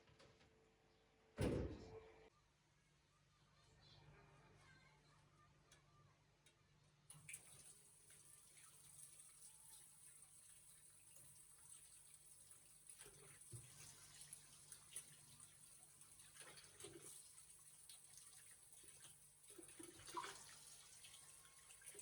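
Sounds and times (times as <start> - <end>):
tap water running into sink: 7.1 - 22.0.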